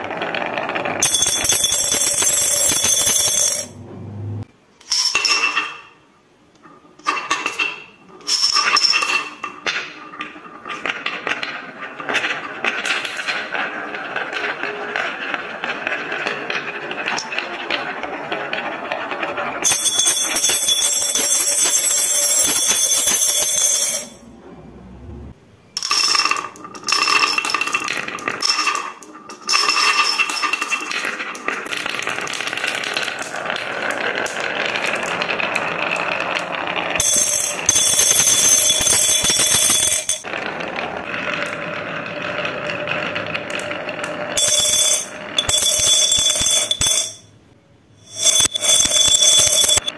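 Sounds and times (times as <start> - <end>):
marbles rolling and clattering: 0.0 - 3.8, 6.6 - 24.3, 25.8 - 47.3, 48.0 - 49.9
bell-like ringing rattle: 1.0 - 3.9, 19.6 - 24.3, 37.0 - 40.3, 44.4 - 47.3, 48.0 - 49.9.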